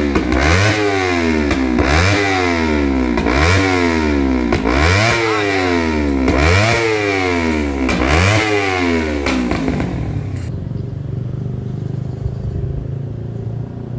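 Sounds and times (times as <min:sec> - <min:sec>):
motorcycle engine idling: 0:00.0 - 0:10.8
motorcycle engine revving: 0:00.0 - 0:10.8.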